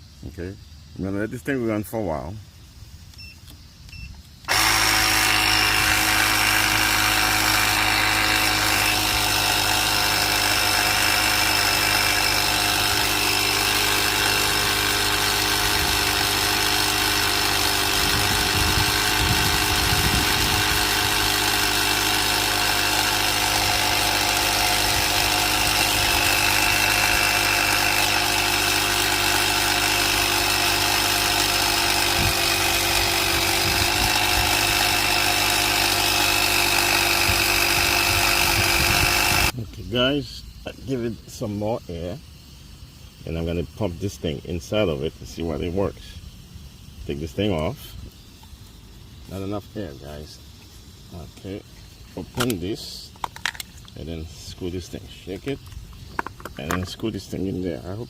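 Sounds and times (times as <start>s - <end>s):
electric air compressor running: 4.4s - 39.6s.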